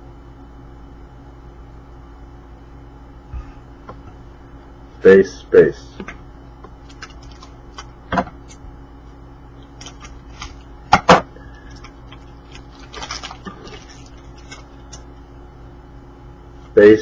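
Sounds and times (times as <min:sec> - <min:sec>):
faint steady hum: 0:00.0 - 0:17.0
cards rustling and clicking: 0:06.7 - 0:08.6, 0:09.6 - 0:10.7, 0:11.4 - 0:15.1.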